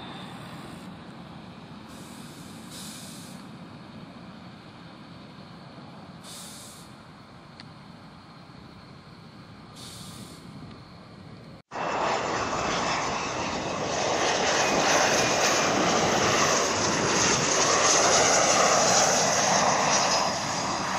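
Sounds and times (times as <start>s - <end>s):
distant airport traffic rumble: 0.0s - 20.9s
high hiss bursts: 1.9s - 3.5s, 6.2s - 7.0s, 9.8s - 10.5s.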